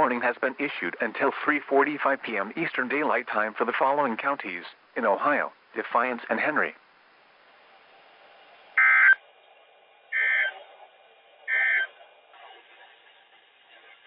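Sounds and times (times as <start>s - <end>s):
faint radio hiss: 0.0s - 14.0s
buzzy two-tone digital data bursts: 8.8s - 9.2s.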